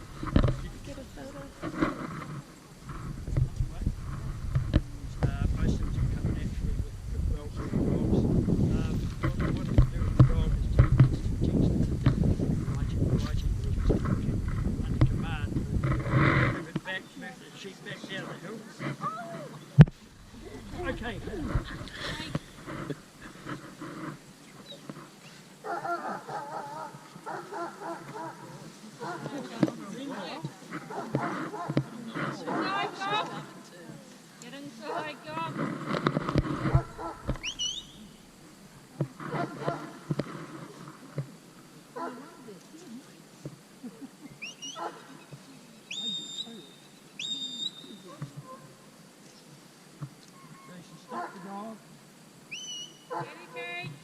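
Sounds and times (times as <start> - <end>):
quavering animal calls: 18.2 - 33.4, 36.6 - 38.2, 44.3 - 48.9, 52.5 - 53.6
shepherd's whistle: 37.4 - 38.0, 45.9 - 46.6, 47.2 - 47.9, 52.5 - 53.0.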